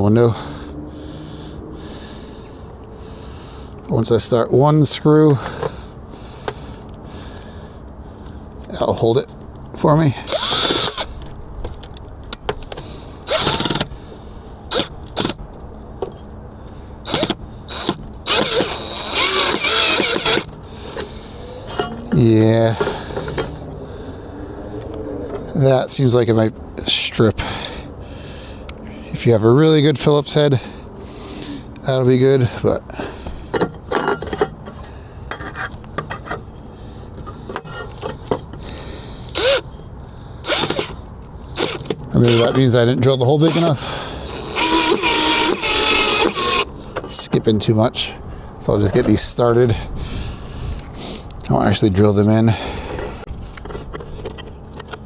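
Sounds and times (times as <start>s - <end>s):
cordless drill driving screw: 10.2s - 11.1s, 13.2s - 13.9s, 14.7s - 15.4s, 17.0s - 20.6s, 39.3s - 39.6s, 40.4s - 41.0s, 41.6s - 42.7s, 43.4s - 46.7s
drill bit skipping in screw head: 10.3s - 11.1s, 13.3s - 13.9s, 17.1s - 20.5s, 39.3s - 39.6s, 40.4s - 41.0s, 43.4s - 46.7s.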